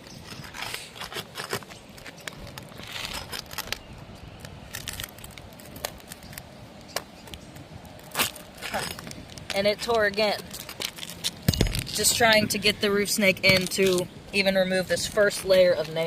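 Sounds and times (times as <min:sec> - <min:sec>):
tool scraping under shingles: 0:00.0 - 0:03.9
shingles crackling and snapping: 0:00.0 - 0:12.6.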